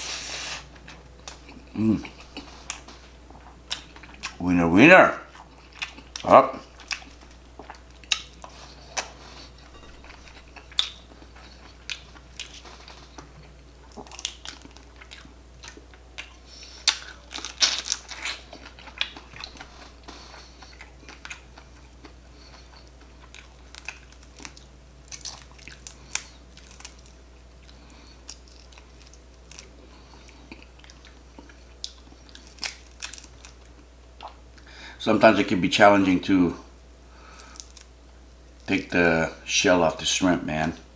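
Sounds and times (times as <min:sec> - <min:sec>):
close-miked chewing and biting: 0:00.8 - 0:04.4, 0:05.3 - 0:34.4.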